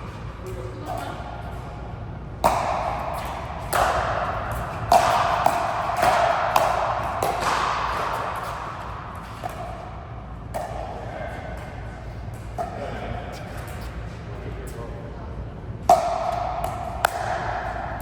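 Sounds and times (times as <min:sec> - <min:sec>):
ball hitting rackets: 0:02.3 - 0:11.6, 0:15.8 - 0:18.0.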